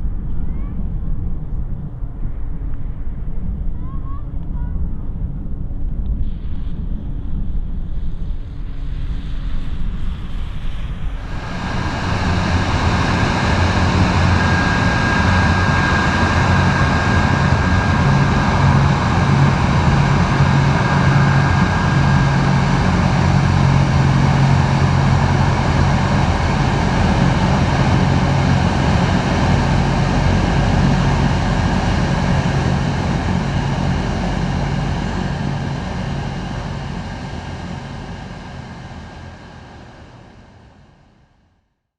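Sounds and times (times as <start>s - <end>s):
turboprop engines running: 0.0s - 41.5s
thin engine whine: 10.7s - 41.4s.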